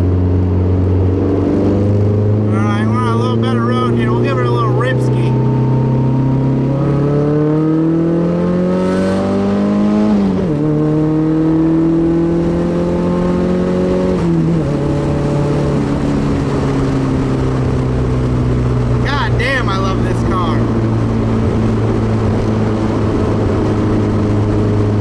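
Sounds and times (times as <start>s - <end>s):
car engine accelerating: 0.0s - 25.0s.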